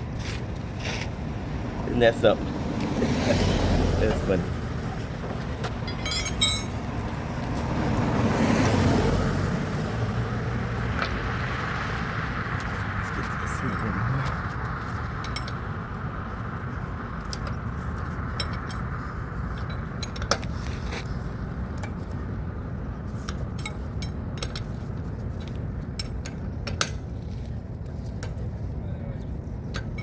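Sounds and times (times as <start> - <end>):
metal hand tools clinking: 5.8 - 6.8.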